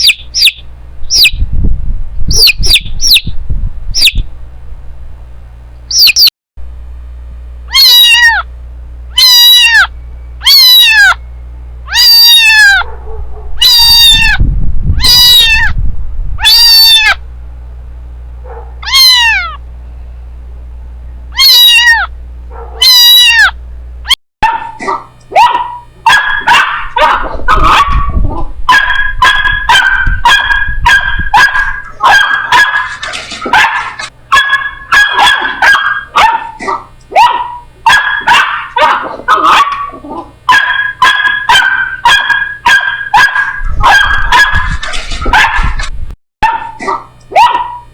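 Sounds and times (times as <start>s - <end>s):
puppies yelping and whining: 5.9s - 6.3s, 7.7s - 8.5s, 9.2s - 11.2s, 11.9s - 13.0s, 13.6s - 14.4s, 15.0s - 15.8s, 16.4s - 17.2s, 18.5s - 19.6s, 21.4s - 23.6s
kitten meowing: 7.7s - 8.5s, 9.2s - 11.2s, 11.9s - 12.8s, 13.6s - 14.4s, 15.0s - 15.8s, 16.4s - 17.2s, 18.8s - 19.6s, 21.3s - 22.1s, 22.8s - 23.6s.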